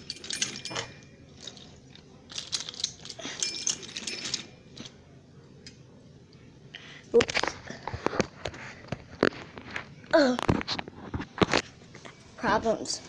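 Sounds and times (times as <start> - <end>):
toy train cars clicking and rattling: 0.0 - 4.9.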